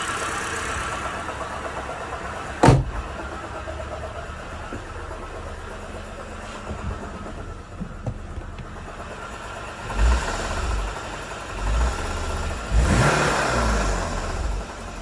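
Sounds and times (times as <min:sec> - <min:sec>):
car engine idling and revving: 0:00.0 - 0:15.0.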